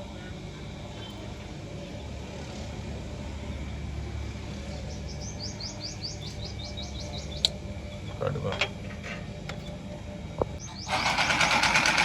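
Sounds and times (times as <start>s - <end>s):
steady low hum: 0.0s - 12.0s
bird chirping rapidly: 4.7s - 7.5s, 10.6s - 11.6s.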